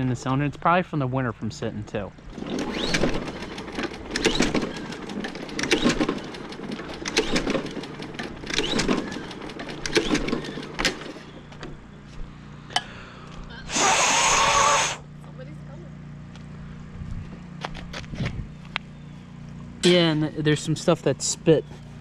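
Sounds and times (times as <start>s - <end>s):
mower recoil starter pulled: 2.2s - 11.4s, 13.7s - 15.0s
engine turning over: 2.2s - 12.0s, 13.7s - 15.1s.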